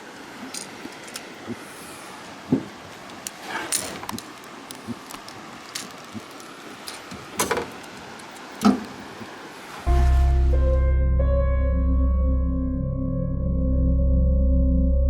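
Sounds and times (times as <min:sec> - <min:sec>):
steady background hiss: 0:00.0 - 0:09.9.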